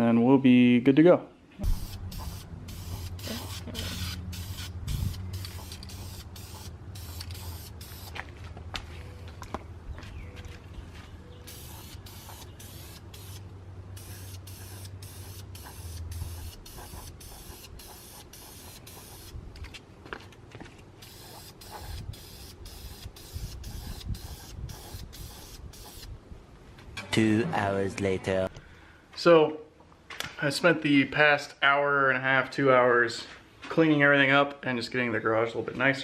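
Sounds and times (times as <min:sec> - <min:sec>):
low steady hum: 0:01.4 - 0:21.2
electrical tape being pulled off: 0:01.6 - 0:08.2, 0:14.0 - 0:19.8, 0:21.0 - 0:26.1.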